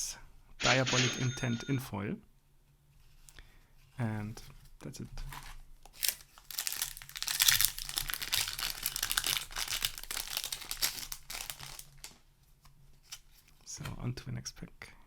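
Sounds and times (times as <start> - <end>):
foil wrapper crinkling and tearing: 5.3 - 12.2.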